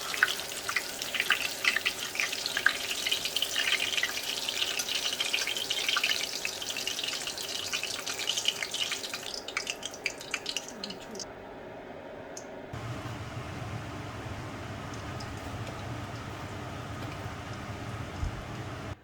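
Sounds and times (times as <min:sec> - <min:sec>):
food deep-frying in oil: 0:00.0 - 0:11.2, 0:12.8 - 0:19.0.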